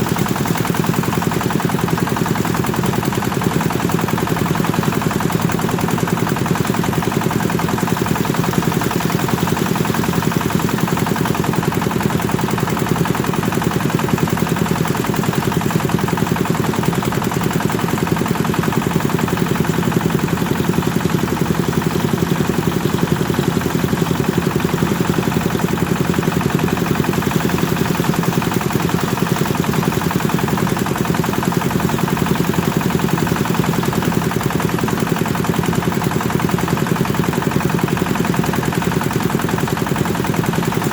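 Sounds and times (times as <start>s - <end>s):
engine driving threshing machine: 0.0s - 40.9s.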